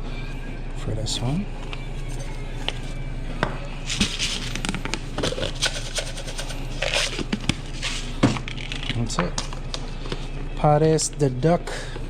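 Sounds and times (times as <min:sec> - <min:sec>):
steady low hum: 0:00.0 - 0:12.0
utensils and cookware clicking: 0:04.0 - 0:07.2.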